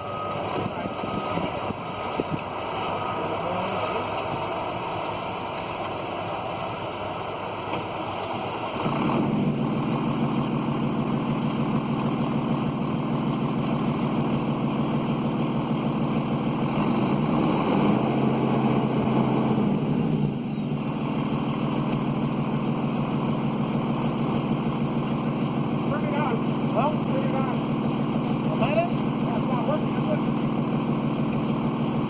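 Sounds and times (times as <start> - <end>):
engine running: 0.0 - 32.0.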